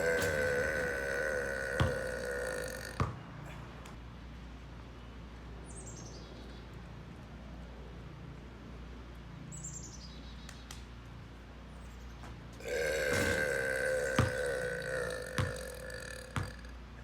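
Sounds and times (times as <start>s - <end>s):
long human burp: 0.0s - 3.7s, 12.6s - 17.0s
bird chirp: 5.6s - 6.9s, 9.5s - 10.7s.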